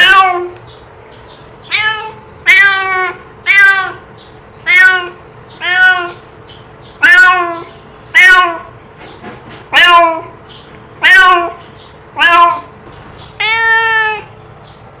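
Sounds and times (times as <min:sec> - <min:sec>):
cat meowing: 0:00.0 - 0:00.6, 0:01.6 - 0:06.2, 0:07.0 - 0:08.8, 0:09.7 - 0:10.4, 0:11.0 - 0:14.4.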